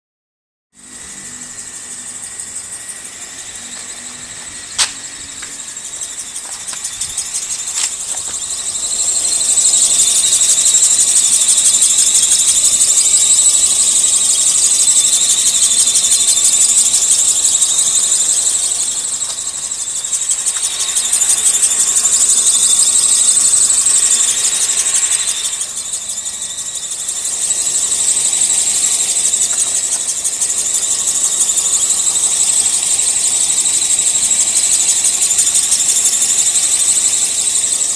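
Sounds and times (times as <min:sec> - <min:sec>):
drive belt squealing: 0:00.8 - 0:37.9
sharp click: 0:04.8 - 0:05.6.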